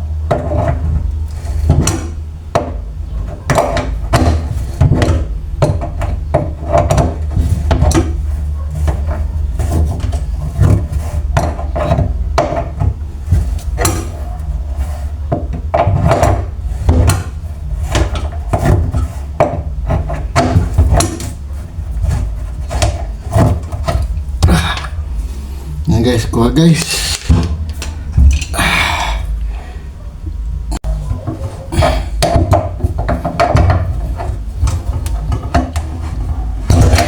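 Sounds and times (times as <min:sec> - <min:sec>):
knocks and scraping on faucet parts: 0:30.8 - 0:37.0.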